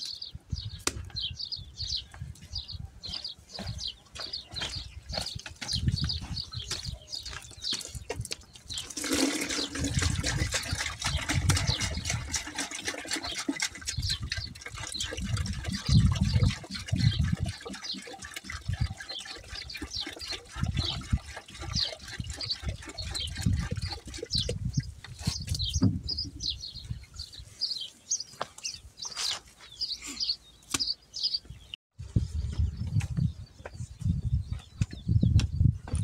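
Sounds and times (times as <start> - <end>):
birds chirping faintly: 0.0 - 36.0
water pouring into container: 8.7 - 24.9.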